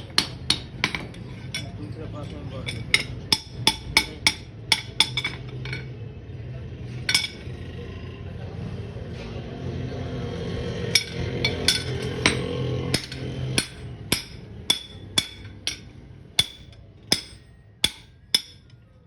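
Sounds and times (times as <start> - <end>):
hammer striking iron on anvil: 0.0 - 1.7, 2.7 - 5.5, 7.1 - 7.5, 10.9 - 18.8
low steady rumble: 0.0 - 19.0.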